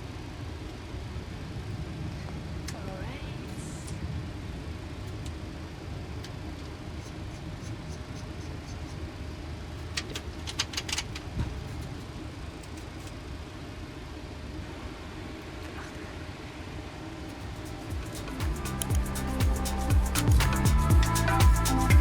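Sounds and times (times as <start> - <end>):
low aircraft rumble: 17.4 - 22.0.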